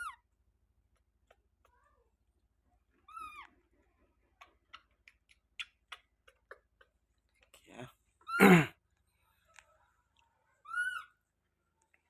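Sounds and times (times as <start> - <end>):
baby monkey squeaky calls: 10.6 - 11.2.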